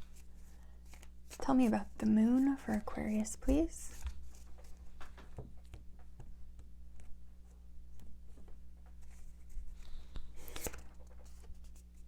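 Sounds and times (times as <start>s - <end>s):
cards being shuffled: 0.0s - 5.9s, 10.4s - 12.0s
low steady hum: 0.0s - 12.0s.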